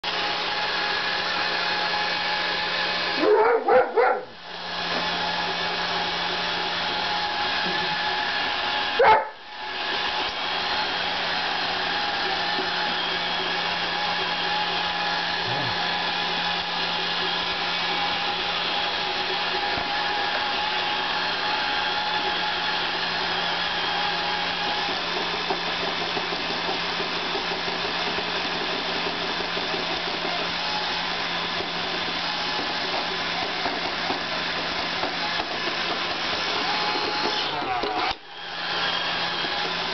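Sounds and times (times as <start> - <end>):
robot vacuum whirring hum: 0.1 - 39.9
dog barking: 3.2 - 4.4, 9.0 - 9.4.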